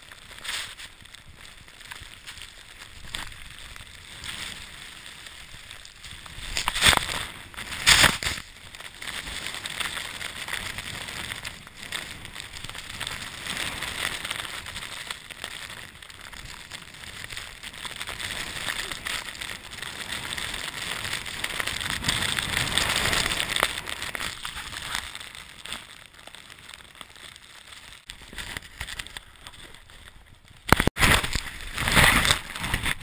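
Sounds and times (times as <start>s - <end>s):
snowboard hissing through powder snow: 0.0s - 1.4s, 18.0s - 24.8s
loud rushes of snow: 0.0s - 27.0s, 30.8s - 33.0s.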